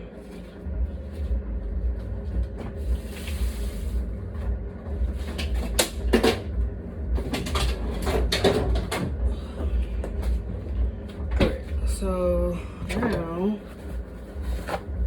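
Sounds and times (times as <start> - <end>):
steady low hum: 0.0 - 15.0
knocks and clatters: 4.4 - 11.8.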